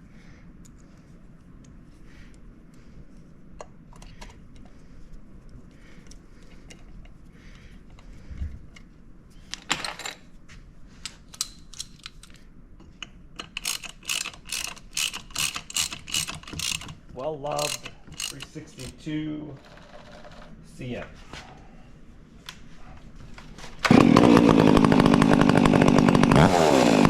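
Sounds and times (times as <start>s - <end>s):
hand tools clicking and tapping: 11.1s - 19.0s
ratchet wrench clicking: 13.4s - 19.0s.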